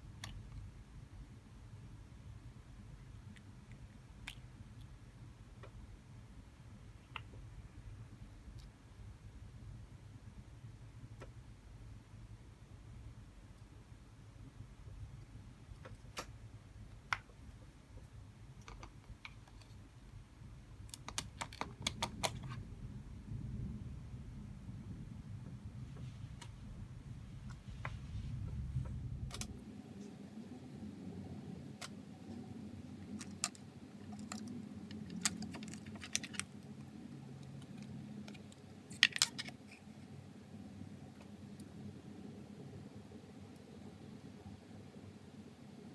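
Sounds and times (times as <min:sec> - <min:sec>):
plastic model pieces clicking: 0:20.9 - 0:22.5, 0:32.9 - 0:39.8.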